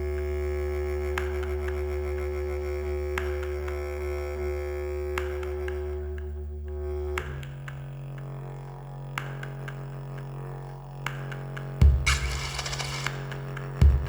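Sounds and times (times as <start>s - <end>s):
low drone: 12.0s - 13.4s
short sharp clicks: 12.1s - 13.4s.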